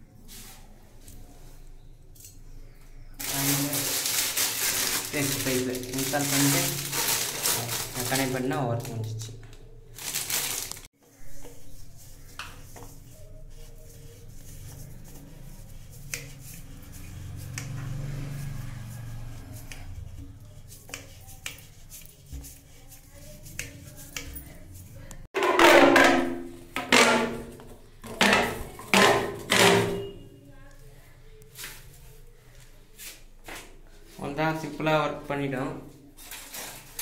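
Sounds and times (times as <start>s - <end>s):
plastic pipe clicks and knocks: 25.4s - 27.4s, 28.0s - 29.9s.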